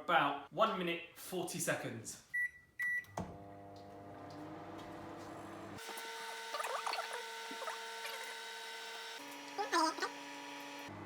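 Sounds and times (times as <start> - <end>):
microwave oven humming: 3.1 - 11.0.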